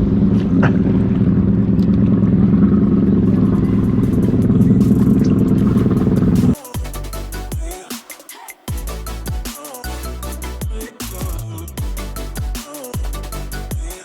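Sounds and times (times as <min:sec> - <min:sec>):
motorboat engine running: 0:00.0 - 0:06.6.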